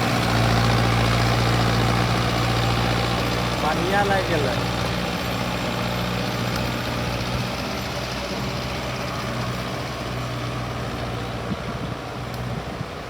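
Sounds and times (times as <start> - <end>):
tractor diesel engine running: 0.0 - 13.0.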